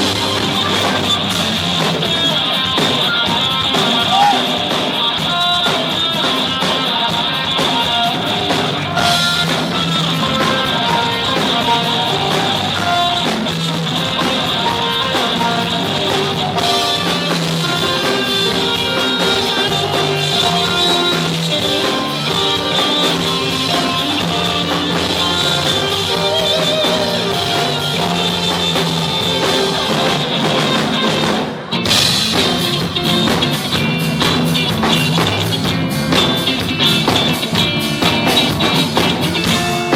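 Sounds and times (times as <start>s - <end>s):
rock band playing: 0.0s - 39.9s.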